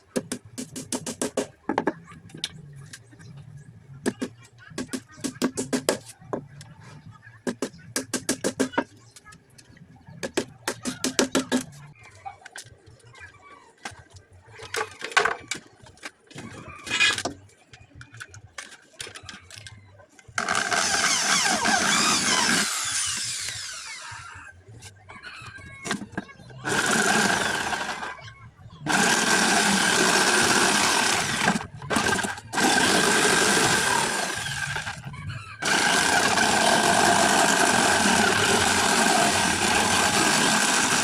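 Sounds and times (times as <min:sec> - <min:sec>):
power tool running: 0:20.4 - 0:24.1, 0:26.6 - 0:28.1, 0:28.9 - 0:35.0, 0:35.6 - 0:41.0
rhythmic tool strokes: 0:20.4 - 0:24.3, 0:26.6 - 0:28.1, 0:28.9 - 0:35.0, 0:35.6 - 0:41.0.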